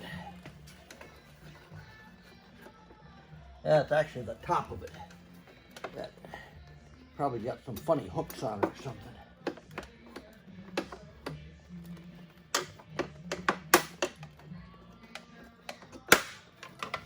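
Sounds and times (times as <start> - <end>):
hand tools being handled: 0.0 - 3.0, 3.9 - 17.0
plastic cover clicking and knocking: 12.5 - 14.4, 15.1 - 17.0.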